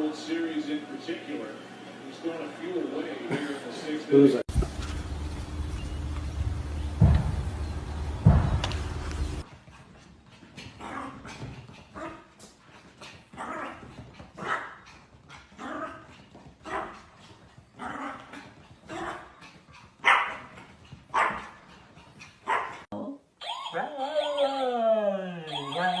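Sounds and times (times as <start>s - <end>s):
dog barking: 14.4s - 14.8s, 16.6s - 17.0s, 17.8s - 19.3s, 20.0s - 21.6s, 22.5s - 22.9s.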